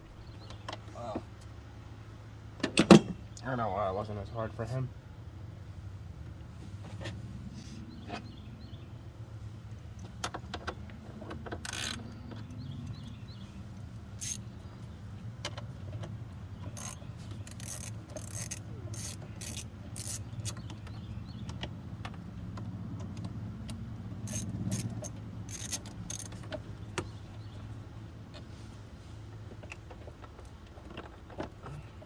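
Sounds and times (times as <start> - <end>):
metallic clicks of hand tools: 11.6 - 13.2, 14.2 - 14.4, 16.7 - 20.7, 24.3 - 26.6.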